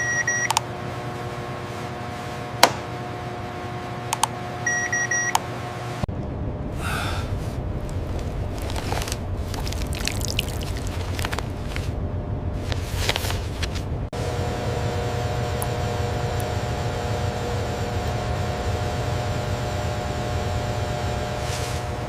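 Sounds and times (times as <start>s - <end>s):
electronic machine hum: 0.0s - 22.0s
sharp clicks: 4.1s - 4.3s
low rumble: 6.0s - 22.0s.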